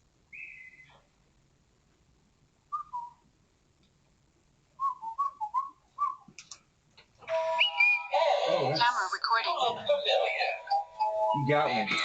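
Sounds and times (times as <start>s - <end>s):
person whistling a tune: 4.8s - 6.3s, 7.3s - 8.2s.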